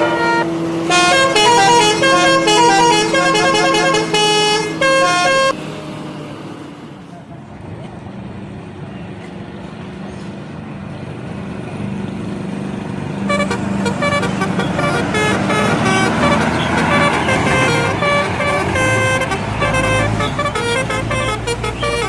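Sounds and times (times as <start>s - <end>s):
musical air horn tune: 0.0s - 5.6s, 13.3s - 22.0s
bus engine running: 0.0s - 22.0s.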